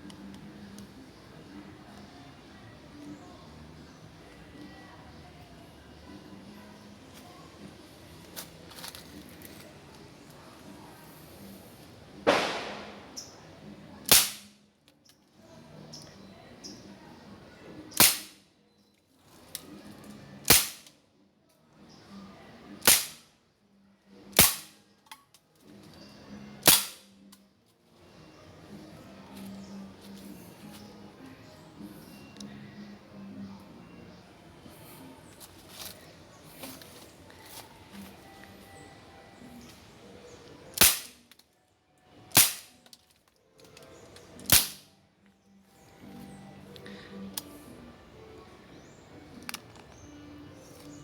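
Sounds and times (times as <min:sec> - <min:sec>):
air pistol shots: 0:12.3 - 0:13.3, 0:14.1 - 0:14.5, 0:18.0 - 0:18.4, 0:20.4 - 0:20.9, 0:22.8 - 0:23.3, 0:24.4 - 0:24.8, 0:26.6 - 0:27.1, 0:40.8 - 0:41.2, 0:42.3 - 0:42.7, 0:44.5 - 0:44.9.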